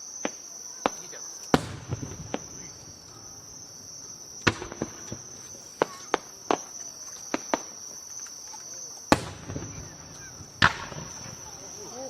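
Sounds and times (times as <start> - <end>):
fireworks bangs: 0.0 - 12.0
insect chorus: 0.0 - 12.0.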